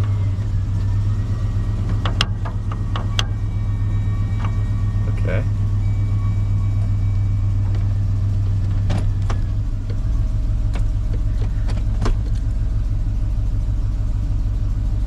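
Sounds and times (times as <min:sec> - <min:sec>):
pickup engine idling: 0:00.0 - 0:15.0
gear shifter clicks: 0:10.7 - 0:12.5.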